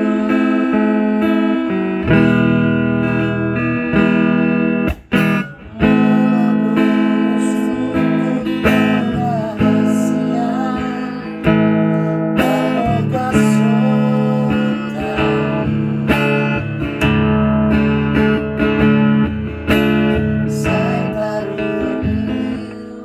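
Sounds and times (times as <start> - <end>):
person singing: 0.0 - 3.2, 5.6 - 16.6, 20.4 - 23.0
acoustic guitar strumming: 0.0 - 23.0.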